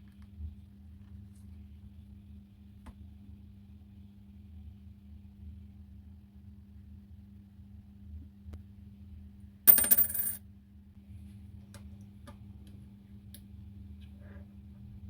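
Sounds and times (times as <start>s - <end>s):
coin clinking on hard surface: 9.7s - 10.4s.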